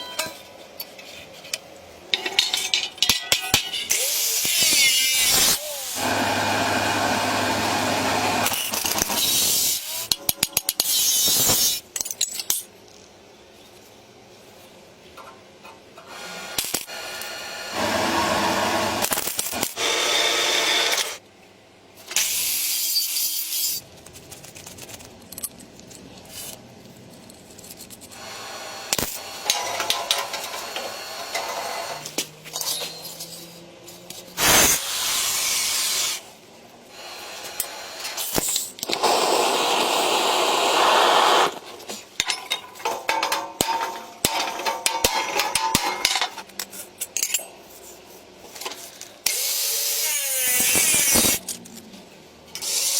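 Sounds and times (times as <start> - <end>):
abrasive cutting tool bursts: 3.9 - 9.8, 34.4 - 36.3, 37.6 - 41.6.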